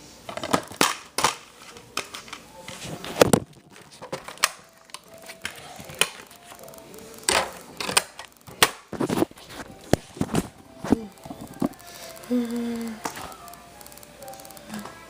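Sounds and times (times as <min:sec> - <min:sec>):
plastic case clicking and snapping: 0:03.2 - 0:06.3, 0:07.2 - 0:09.3.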